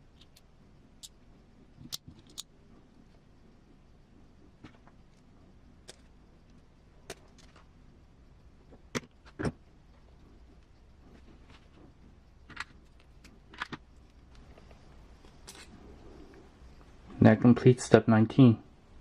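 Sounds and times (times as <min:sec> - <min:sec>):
small parts clicking and knocking: 0:00.0 - 0:01.2, 0:01.8 - 0:02.5, 0:05.8 - 0:07.7, 0:12.4 - 0:15.8.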